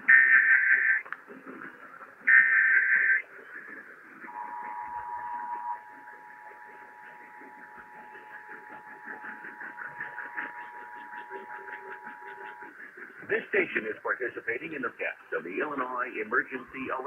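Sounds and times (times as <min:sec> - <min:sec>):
radio static: 0:00.0 - 0:17.0
buzzy digital data burst: 0:04.3 - 0:12.7
two-tone alert signal: 0:04.3 - 0:12.7.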